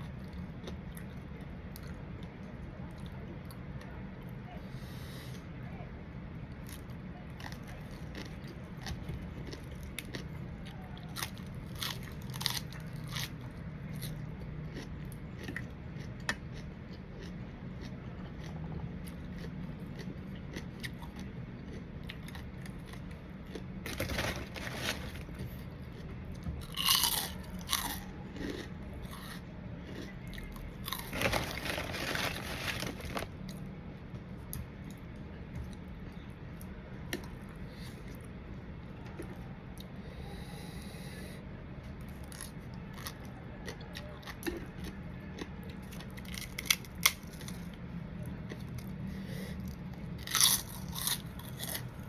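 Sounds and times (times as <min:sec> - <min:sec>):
person chewing crunchy food: 0:06.6 - 0:33.6, 0:41.9 - 0:52.0.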